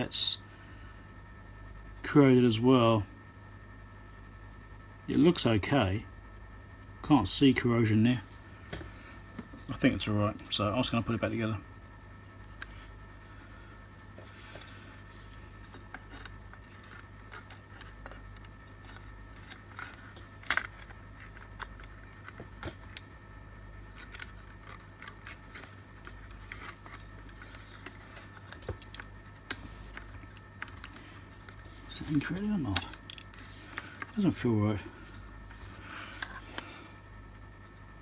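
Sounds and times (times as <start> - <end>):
steady low hum: 0.0 - 38.0
plastic parts clicking: 15.7 - 23.1, 23.9 - 34.2.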